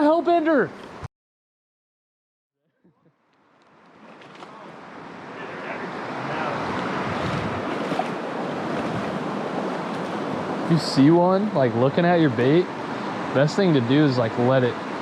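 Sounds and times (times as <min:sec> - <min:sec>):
river water rushing: 0:03.6 - 0:15.0.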